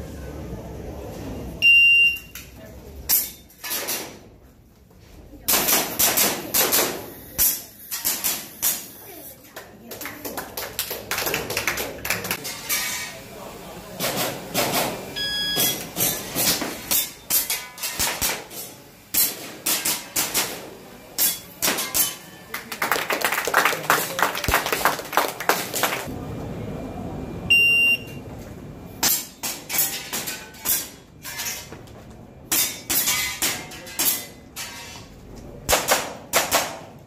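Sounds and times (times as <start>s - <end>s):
shot timer beep: 1.6s - 2.4s, 15.2s - 15.8s, 27.5s - 28.2s
airsoft pistol shots: 35.7s - 36.9s.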